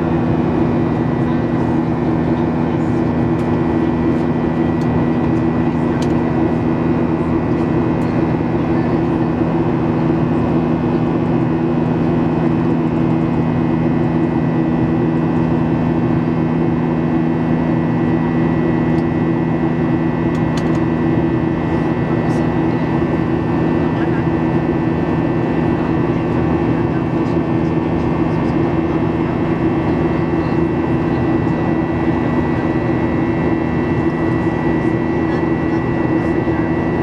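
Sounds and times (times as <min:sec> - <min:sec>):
high engine whine: 0:00.0 - 0:37.0
jet engines roaring in cabin: 0:00.0 - 0:37.0.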